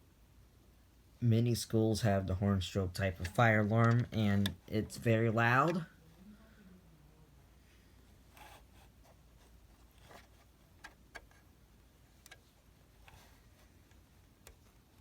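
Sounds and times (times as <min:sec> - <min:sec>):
soft rubbing sounds: 0:07.6 - 0:10.7.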